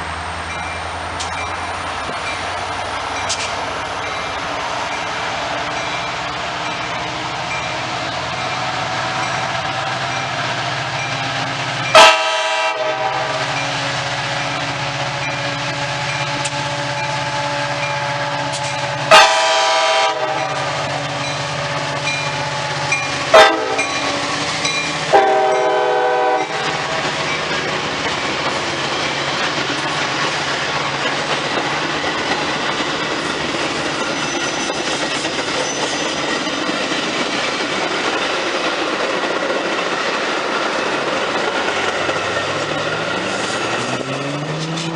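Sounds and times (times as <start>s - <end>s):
moving train rumble and clatter: 0.0s - 44.9s
train horn blasts: 11.9s - 13.5s, 16.4s - 20.8s, 23.3s - 23.9s, 25.1s - 27.0s.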